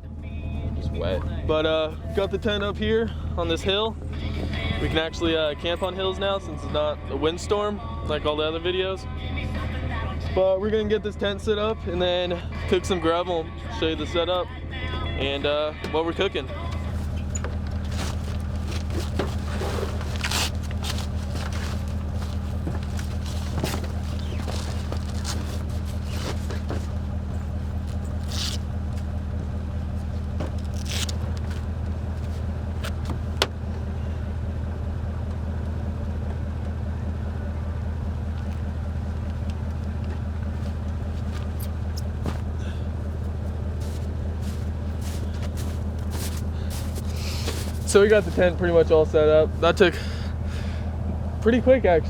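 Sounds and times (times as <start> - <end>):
vehicle engine idling: 0.0 - 52.0
clicks knocks and scrapes of tent: 16.8 - 27.1, 43.8 - 48.5.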